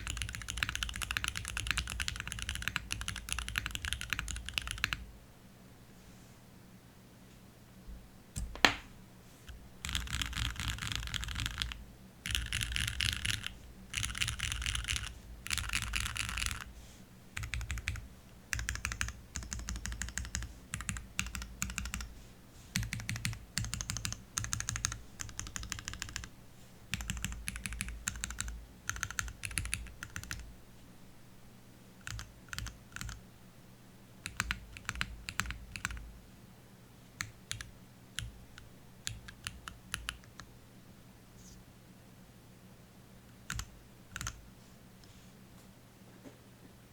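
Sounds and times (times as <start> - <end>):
typing on mechanical keyboard: 0.0 - 5.0, 9.8 - 16.7, 17.4 - 22.1, 22.8 - 26.3, 26.9 - 30.4, 32.0 - 33.2, 34.2 - 36.0, 37.2 - 38.3, 39.0 - 40.5, 43.4 - 44.4
faint steady hum: 0.0 - 46.9.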